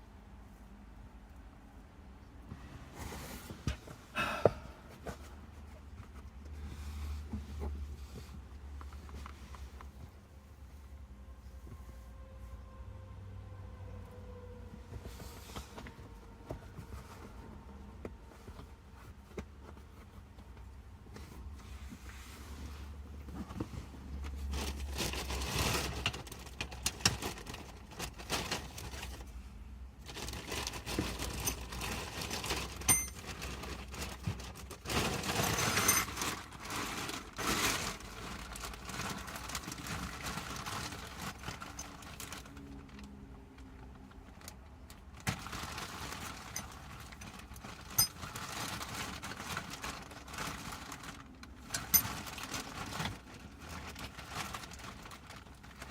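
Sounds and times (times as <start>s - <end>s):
rustling and crinkling: 0.1s - 12.7s, 14.6s - 55.9s.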